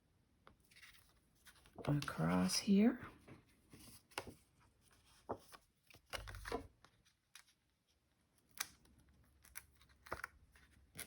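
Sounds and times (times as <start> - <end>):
paper rustling: 3.7 - 7.6.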